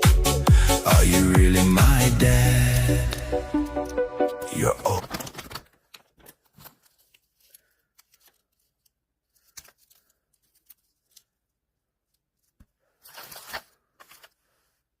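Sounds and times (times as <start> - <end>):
packaging tearing and rustling: 4.9 - 11.4, 13.0 - 14.4.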